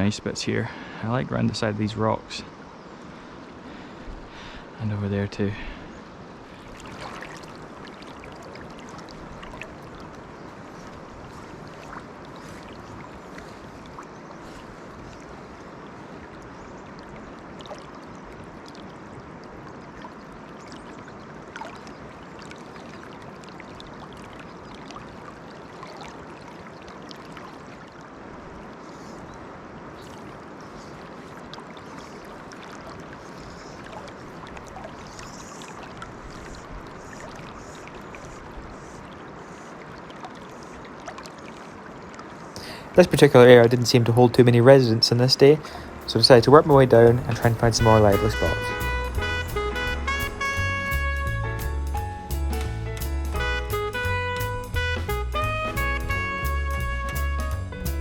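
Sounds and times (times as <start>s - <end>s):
river water over rocks: 0.0s - 48.0s.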